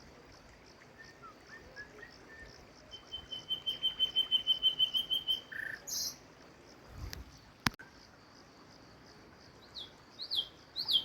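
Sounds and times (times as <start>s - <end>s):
faint steady hiss: 0.0s - 11.0s
insect chirping: 0.0s - 11.0s
bird calling repeated notes: 1.2s - 6.2s.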